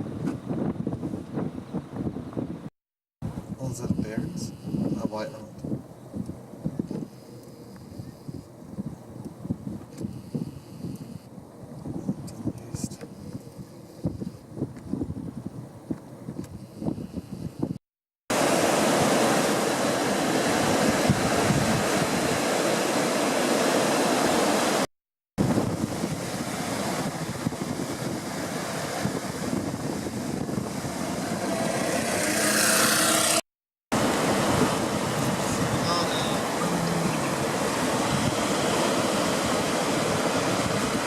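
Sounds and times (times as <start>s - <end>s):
wind buffeting microphone: 0.0s - 7.2s, 7.8s - 17.8s, 18.8s - 22.7s, 25.4s - 32.6s, 34.0s - 41.0s
surf on beach: 18.3s - 41.0s.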